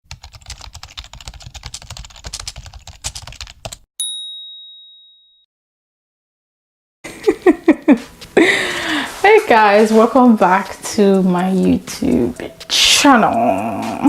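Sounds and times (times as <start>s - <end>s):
rapid keyboard typing: 0.1s - 3.9s
bright bell ding: 4.0s - 5.5s.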